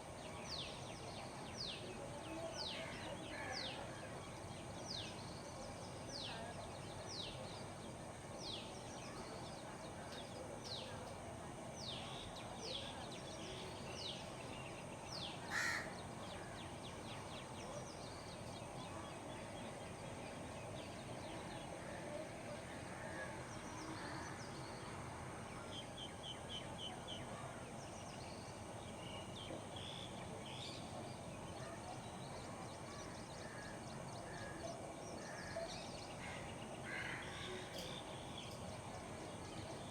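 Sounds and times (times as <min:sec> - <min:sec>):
crow cawing: 0:15.5 - 0:16.0.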